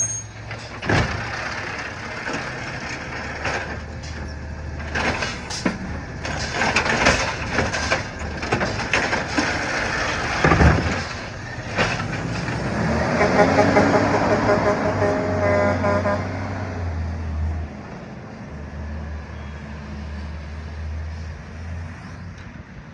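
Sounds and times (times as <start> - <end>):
recycling truck engine running: 0.0 - 16.2
knocks and clatters: 0.4 - 12.8.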